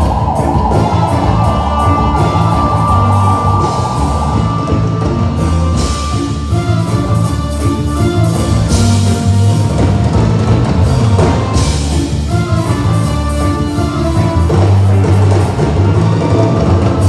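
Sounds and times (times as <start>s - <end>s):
cymbal crashes: 0.0s - 7.7s
instrumental music over loudspeakers: 0.0s - 17.0s.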